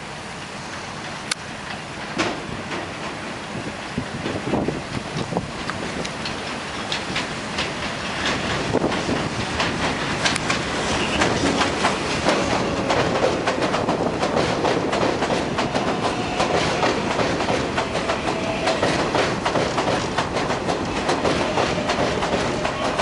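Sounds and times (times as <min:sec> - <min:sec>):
train wheels clacking over rail joints: 0:00.3 - 0:23.0.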